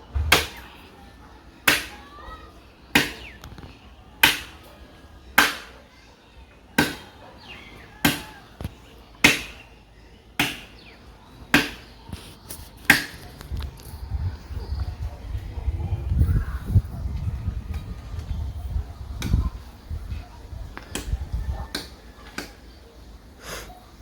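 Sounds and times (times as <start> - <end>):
axe chopping tree trunk: 0.1 - 0.7, 1.6 - 2.0, 3.0 - 3.4, 4.2 - 4.6, 5.4 - 5.7, 6.8 - 7.1, 8.0 - 8.4, 9.2 - 9.6, 10.4 - 10.9, 11.5 - 11.9, 12.9 - 13.3.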